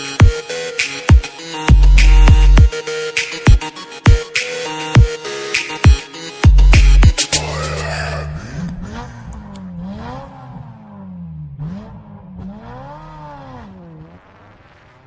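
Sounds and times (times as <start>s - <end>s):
vehicle engine revving: 6.6s - 15.0s.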